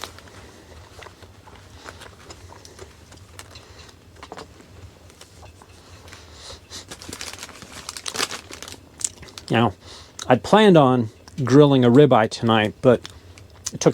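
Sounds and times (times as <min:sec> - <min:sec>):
low steady hum: 0:00.0 - 0:13.9
paper wrapper crinkling: 0:06.8 - 0:09.6.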